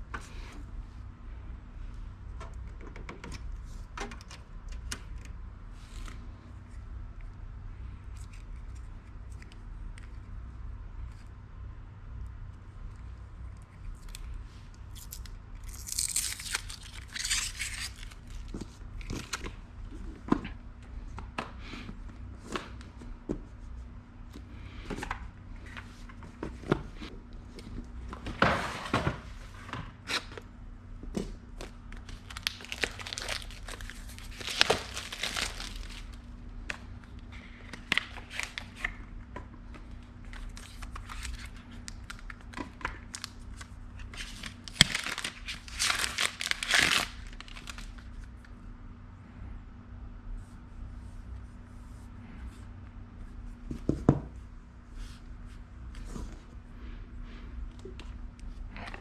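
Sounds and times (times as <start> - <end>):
packaging crinkling and tearing: 14.9 - 19.6, 31.6 - 39.0, 40.2 - 48.5.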